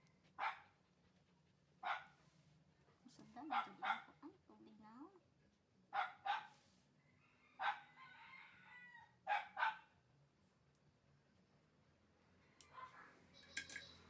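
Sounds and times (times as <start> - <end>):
dog barking: 0.4 - 0.7, 1.8 - 2.2, 3.4 - 4.2, 5.9 - 6.5, 7.6 - 7.9, 9.3 - 9.9
rooster crowing: 7.2 - 9.2.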